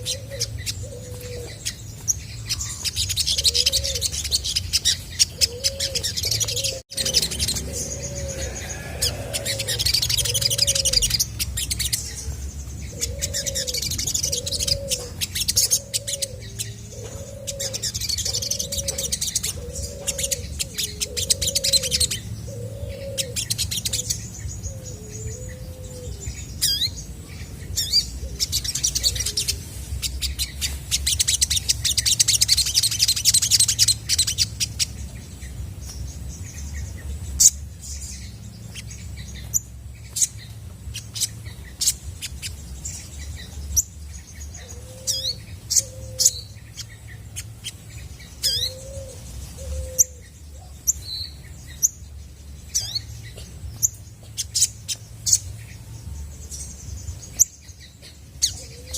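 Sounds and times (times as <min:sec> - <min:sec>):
bird chirping trills: 0:00.0 - 0:58.9
low cooing note: 0:05.5 - 0:11.0.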